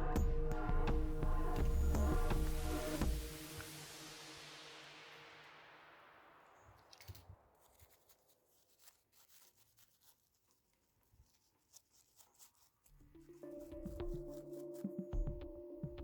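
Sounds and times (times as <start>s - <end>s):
background music: 0.0s - 6.5s, 13.0s - 16.0s.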